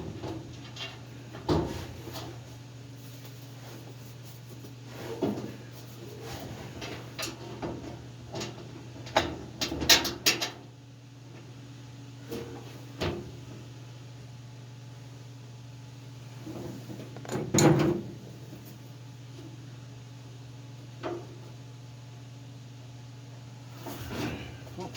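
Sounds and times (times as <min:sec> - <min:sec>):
steady low hum: 0:00.0 - 0:24.9.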